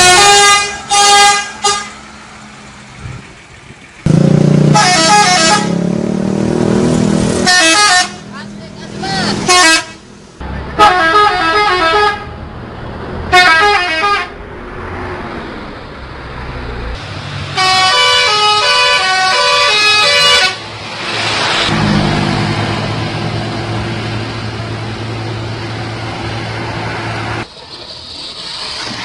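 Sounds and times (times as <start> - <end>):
multi-tone musical bus horn: 0.0 - 2.0, 4.1 - 6.0, 7.3 - 8.3, 9.4 - 10.0, 10.8 - 12.4, 13.3 - 14.4, 17.5 - 20.6
rush of noise: 20.6 - 29.0.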